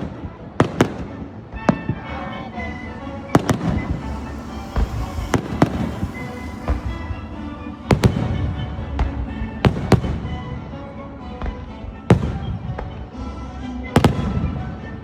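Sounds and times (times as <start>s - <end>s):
fireworks bangs: 0.0s - 10.8s, 14.0s - 14.9s.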